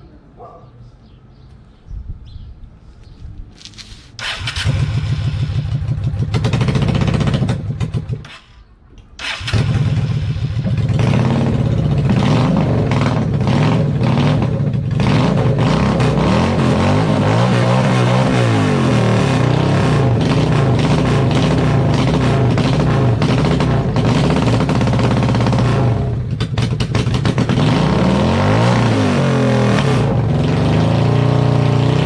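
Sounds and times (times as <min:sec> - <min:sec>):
motorcycle engine starting: 0:04.2 - 0:32.0.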